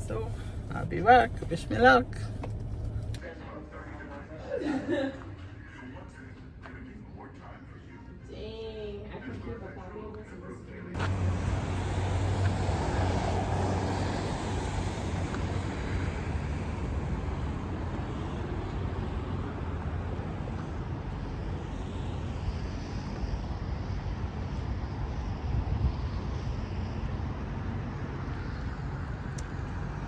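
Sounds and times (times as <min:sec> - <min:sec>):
vehicle and road noise: 0:00.0 - 0:04.4, 0:09.4 - 0:30.0
wind on microphone: 0:16.4 - 0:30.0.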